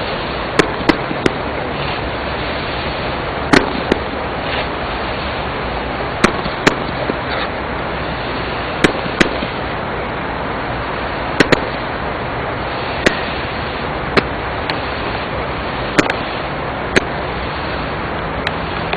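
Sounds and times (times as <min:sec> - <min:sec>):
firework hiss: 0:00.0 - 0:18.9
firework pops: 0:00.5 - 0:02.0, 0:03.5 - 0:04.8, 0:06.2 - 0:07.6, 0:08.8 - 0:09.6, 0:11.4 - 0:11.8, 0:13.0 - 0:13.3, 0:14.1 - 0:14.8, 0:15.9 - 0:17.2.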